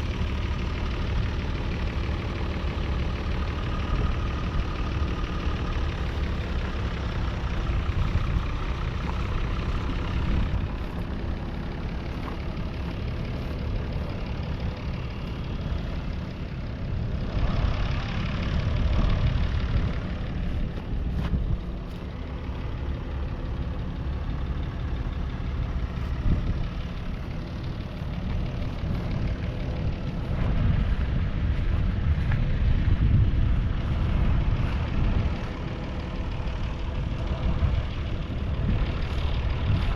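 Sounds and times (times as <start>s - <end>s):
diesel tractor engine running: 0.0s - 39.9s.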